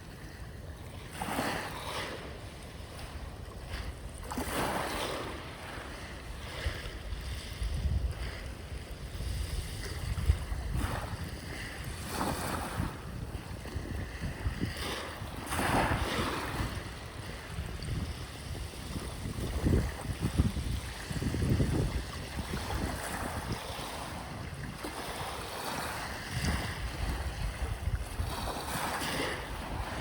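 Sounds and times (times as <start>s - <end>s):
sea waves washing ashore: 0.0s - 30.0s
wind rumble on microphone: 0.0s - 30.0s.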